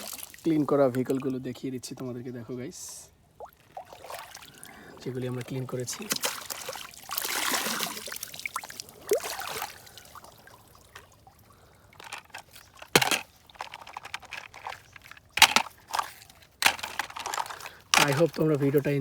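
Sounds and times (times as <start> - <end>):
toy vehicles knocking and clicking: 12.0 - 19.0.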